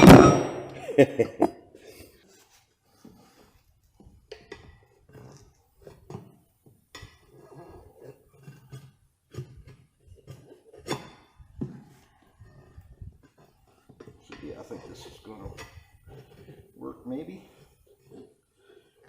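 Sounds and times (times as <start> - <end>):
screwdriver knocking and scraping: 3.0 - 16.8.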